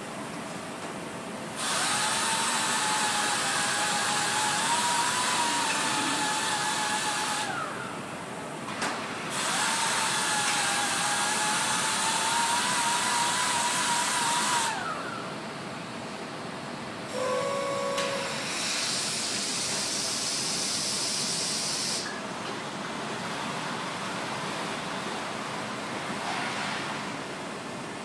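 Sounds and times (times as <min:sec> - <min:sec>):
laser cutter hissing and whining: 0:01.6 - 0:08.3, 0:09.3 - 0:15.4, 0:17.1 - 0:22.1.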